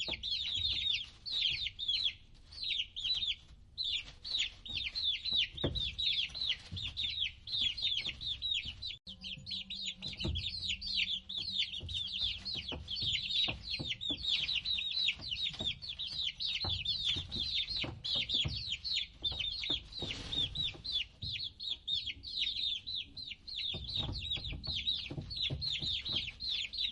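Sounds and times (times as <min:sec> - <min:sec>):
chicks peeping: 0:00.0 - 0:26.9.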